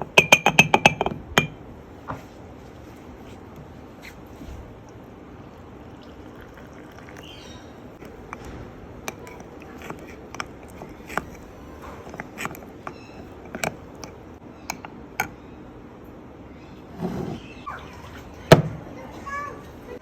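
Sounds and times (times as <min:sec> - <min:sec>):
low background hum: 0:00.0 - 0:20.0
spoon scraping: 0:08.0 - 0:15.4
spoon clinking against mug: 0:09.0 - 0:15.4.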